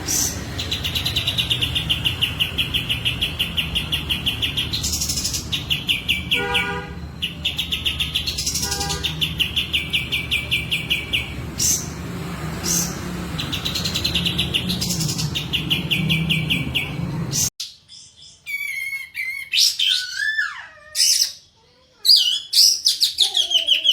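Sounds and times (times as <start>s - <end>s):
songbird trilling: 0.1s - 6.6s.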